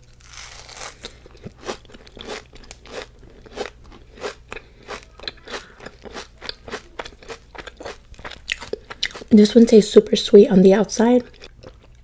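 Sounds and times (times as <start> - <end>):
crunchy chewing: 0.0 - 9.4, 11.2 - 12.0.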